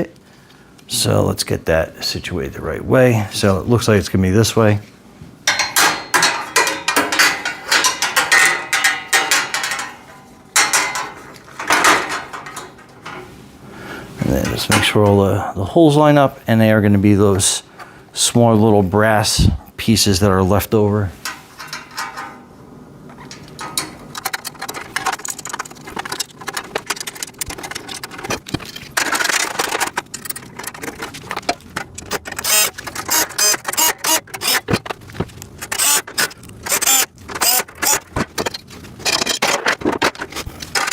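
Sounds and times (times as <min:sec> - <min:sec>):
metal rack parts clanking: 0:05.4 - 0:13.5, 0:14.1 - 0:15.3, 0:21.1 - 0:40.9
metal scraping and rattling: 0:05.4 - 0:15.3, 0:21.1 - 0:40.9.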